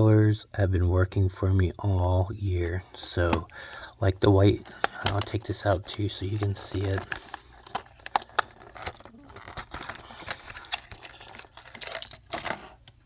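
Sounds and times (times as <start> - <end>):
plastic packaging crinkling: 2.8 - 13.0.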